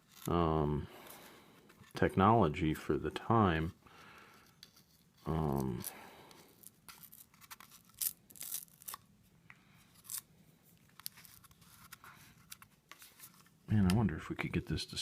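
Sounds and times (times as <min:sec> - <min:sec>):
clicks and crinkles of handled parts: 0:00.0 - 0:00.4, 0:04.3 - 0:14.0.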